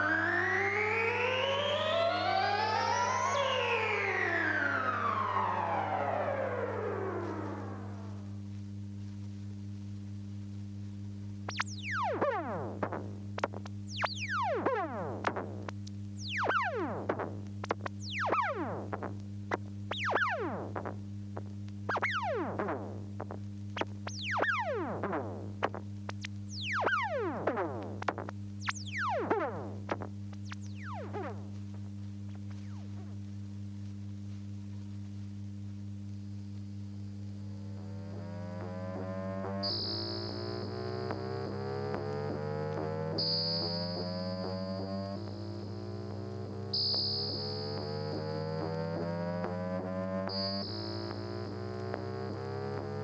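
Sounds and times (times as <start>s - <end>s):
synthesized falling pitch sweeps: 0.0s - 8.4s, 37.6s - 45.2s
steady low hum: 0.0s - 48.2s.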